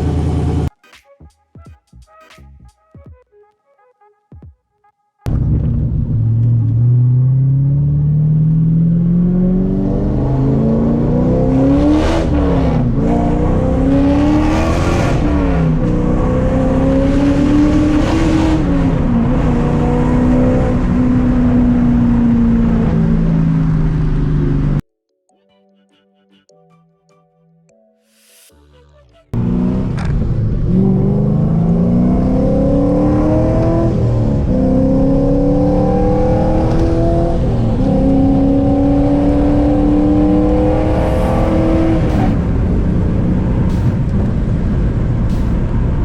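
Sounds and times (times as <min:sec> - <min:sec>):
engine revving under load: 0:05.3 - 0:24.8, 0:29.4 - 0:46.0.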